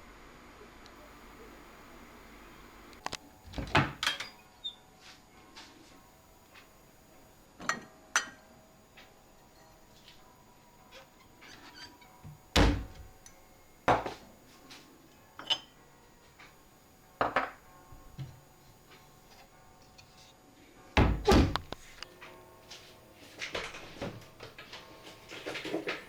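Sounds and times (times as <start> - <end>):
thuds and knocks: 12.6 - 13.1, 21.0 - 21.8.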